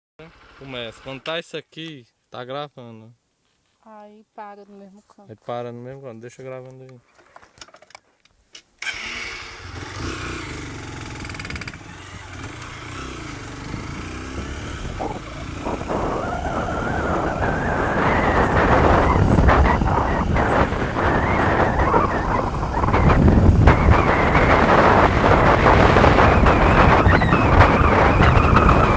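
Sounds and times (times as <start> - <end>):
off-road vehicle engine running: 0.2 - 1.2, 8.8 - 28.9.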